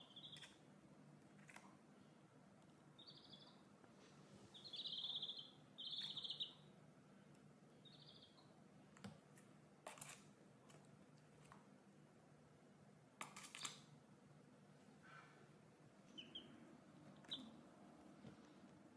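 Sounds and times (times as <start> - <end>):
small animal chirps: 0.0 - 0.6, 3.0 - 3.6, 4.5 - 6.7, 7.8 - 8.4, 16.1 - 16.6, 17.2 - 17.6.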